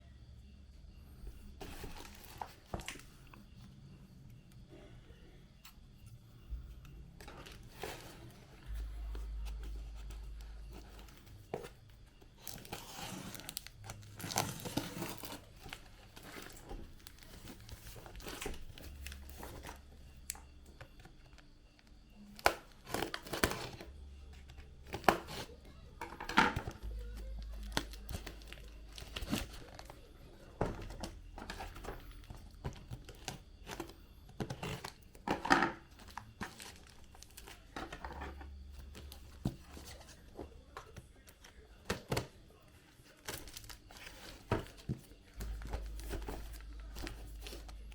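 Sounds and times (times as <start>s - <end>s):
plastic and paper crinkling: 1.6s - 3.5s, 7.2s - 47.9s.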